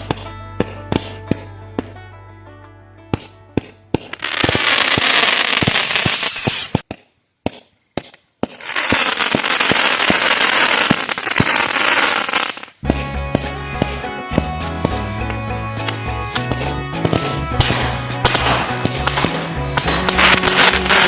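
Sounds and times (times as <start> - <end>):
firework pops: 3.1 - 11.7
fireworks crackling: 3.6 - 13.4, 15.8 - 21.0
firework whistle: 4.5 - 6.8, 19.6 - 21.0.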